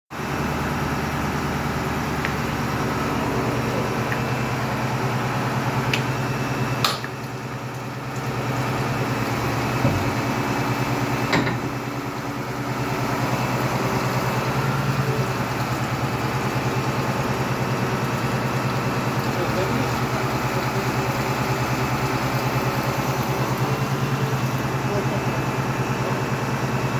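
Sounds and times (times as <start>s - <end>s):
engine idling: 0.2s - 26.9s
sharp clicks and knocks: 11.3s - 11.8s.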